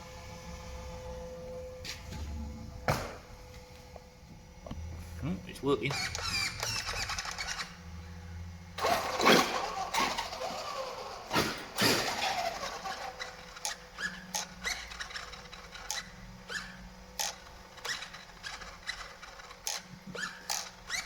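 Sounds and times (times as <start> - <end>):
faint electronic hum: 0.0 - 8.8
servo whirring and clicking: 5.9 - 8.0, 8.8 - 21.0.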